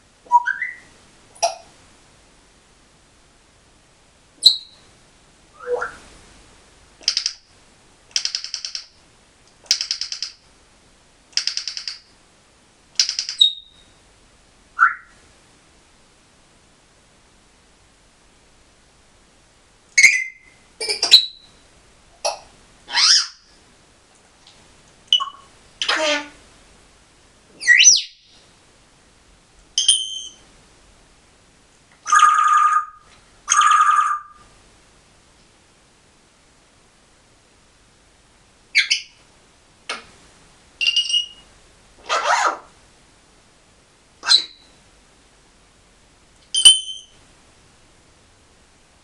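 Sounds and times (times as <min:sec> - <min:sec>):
parrot whistling and squawking: 0:00.3 - 0:01.7, 0:04.4 - 0:04.8, 0:05.6 - 0:06.0, 0:13.0 - 0:13.8, 0:14.8 - 0:15.2, 0:20.0 - 0:20.5, 0:22.9 - 0:23.4, 0:25.1 - 0:26.3, 0:27.6 - 0:28.2, 0:29.8 - 0:30.4, 0:32.0 - 0:34.4, 0:38.8 - 0:39.1, 0:40.8 - 0:41.4, 0:42.0 - 0:42.7, 0:44.2 - 0:44.6, 0:46.5 - 0:47.2.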